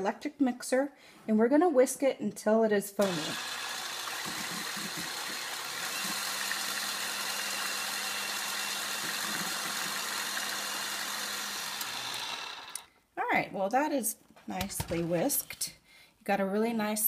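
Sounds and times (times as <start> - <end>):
electric mixer whisking milk: 3.0 - 12.9.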